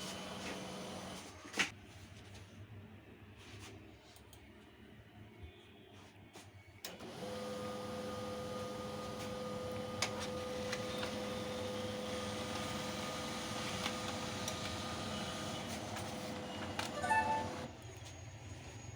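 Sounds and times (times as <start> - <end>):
printer motor whine: 0.0 - 1.3, 6.9 - 18.2.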